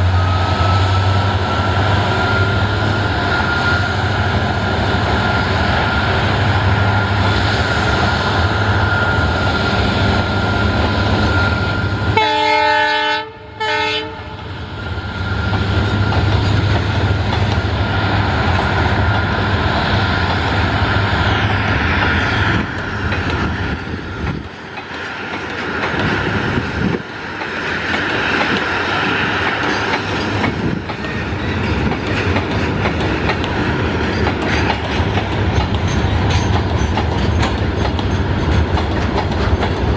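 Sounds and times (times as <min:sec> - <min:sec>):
locomotive horn blasts: 0:11.9 - 0:14.6
train wheels clacking: 0:14.8 - 0:39.9.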